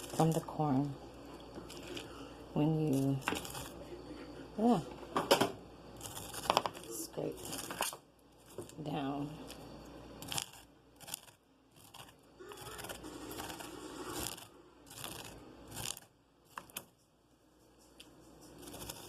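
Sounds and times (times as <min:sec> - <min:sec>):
knife scraping corn cob: 0:01.7 - 0:04.2, 0:06.0 - 0:08.8, 0:10.2 - 0:17.0, 0:18.4 - 0:19.0.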